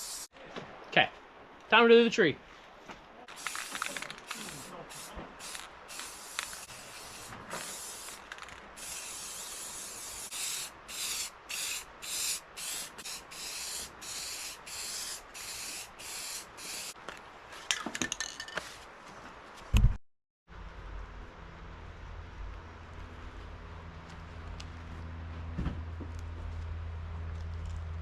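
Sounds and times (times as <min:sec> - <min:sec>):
aerosol can spraying: 0:00.0 - 0:00.3, 0:03.3 - 0:17.0.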